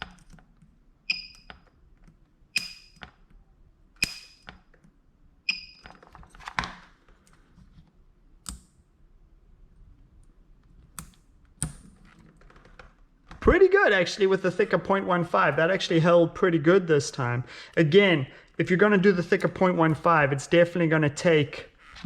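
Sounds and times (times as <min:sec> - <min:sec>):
spot welder snapping: 0:02.6 - 0:03.1, 0:04.0 - 0:04.6.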